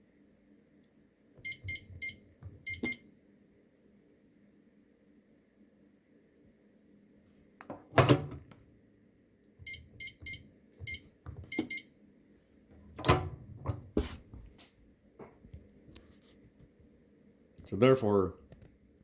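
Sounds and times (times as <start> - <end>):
keypad short beeps: 1.4 - 3.0, 9.6 - 11.9.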